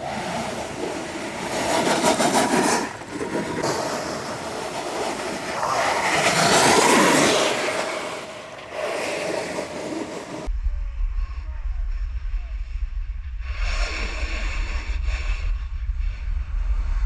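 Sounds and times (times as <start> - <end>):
rolling rumble: 0.0 - 11.1
wind rushing over microphone: 0.0 - 17.0.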